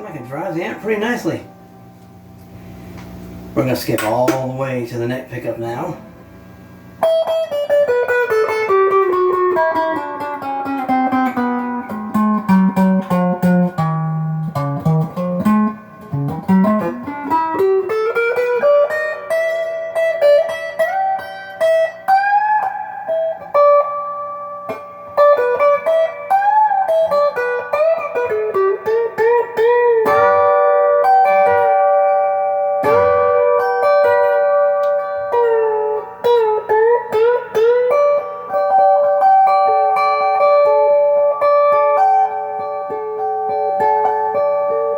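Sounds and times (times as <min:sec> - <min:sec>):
overdriven electric guitar: 0:05.5 - 0:44.9.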